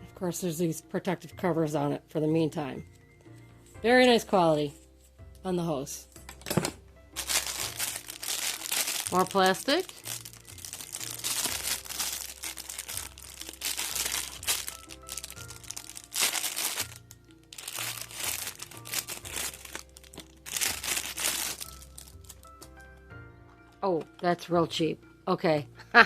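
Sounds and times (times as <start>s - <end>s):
plastic packaging crinkling: 7.2s - 22.6s.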